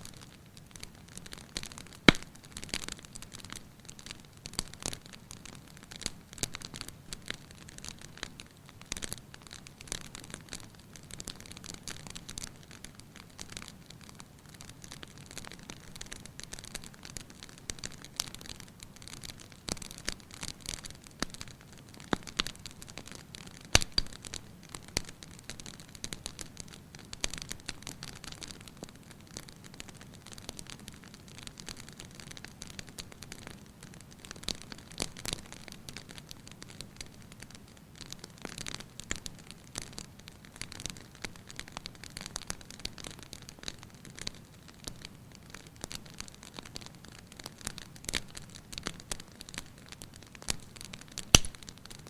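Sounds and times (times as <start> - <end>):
fire crackling: 0.0 - 52.0
sharp fire pops: 2.1 - 2.7, 23.7 - 24.4, 51.2 - 51.9.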